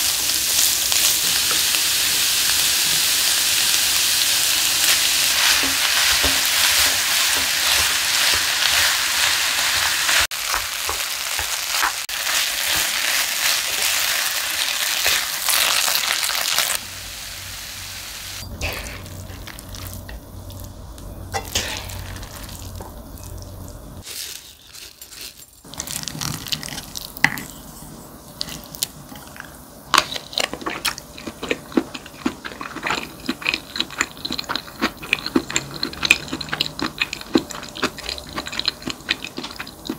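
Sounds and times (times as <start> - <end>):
rice sizzling in a pan: 0.0 - 30.8.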